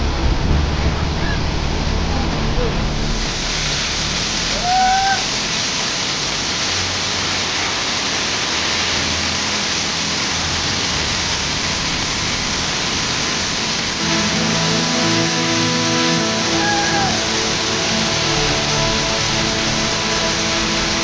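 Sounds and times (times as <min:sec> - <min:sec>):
waterfall rushing: 0:00.0 - 0:21.0
short rising pitched call: 0:16.2 - 0:17.8.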